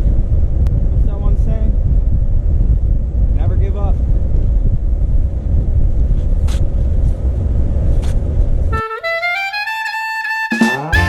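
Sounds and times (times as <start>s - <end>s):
steady low rumble: 0.0s - 8.7s
jazz tune on wind instrument: 8.7s - 11.0s.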